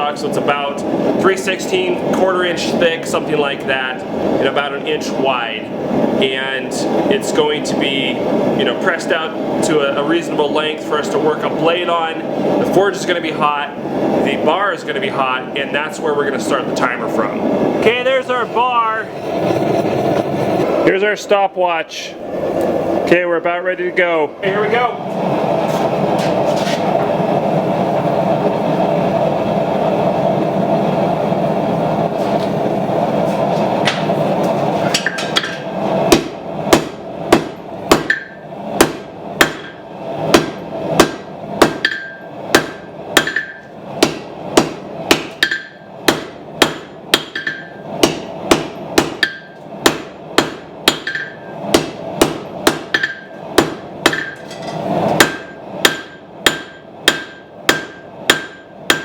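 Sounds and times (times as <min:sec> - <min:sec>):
hammer on hot steel: 0:34.9 - 0:59.0
anvil ringing: 0:36.2 - 0:39.8, 0:40.4 - 0:59.0.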